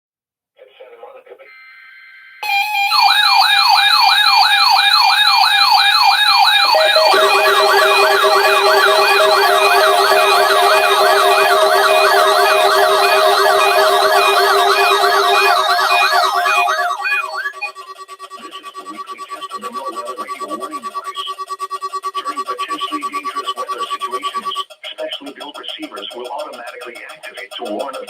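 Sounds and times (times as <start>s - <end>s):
faster yelping siren: 2.4s - 18.2s
electronic siren yelping: 2.4s - 18.3s.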